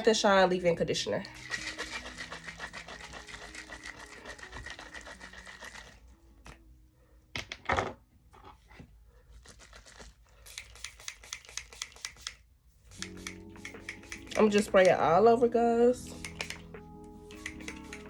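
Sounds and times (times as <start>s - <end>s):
spray bottle clicking: 10.5s - 15.0s, 16.0s - 18.0s.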